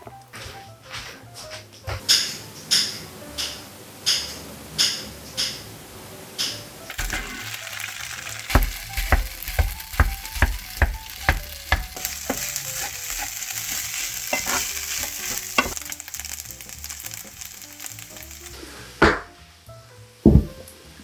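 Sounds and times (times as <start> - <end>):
fried rice sizzling in a pan: 6.9 - 19.0
spatula knocking against pan: 8.5 - 13.3.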